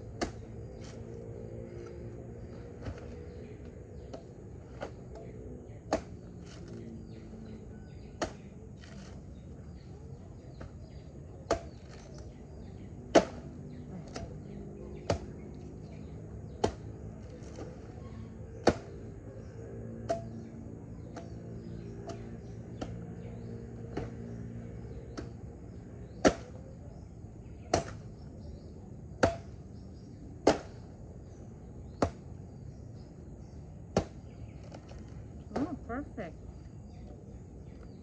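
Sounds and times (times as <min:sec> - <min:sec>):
birds chirping faintly: 0:00.0 - 0:38.0
blade chopping coconut: 0:05.8 - 0:06.6, 0:13.0 - 0:15.4, 0:16.5 - 0:17.7, 0:18.5 - 0:19.1, 0:26.2 - 0:26.6, 0:27.7 - 0:28.0, 0:29.2 - 0:29.6, 0:30.4 - 0:30.8.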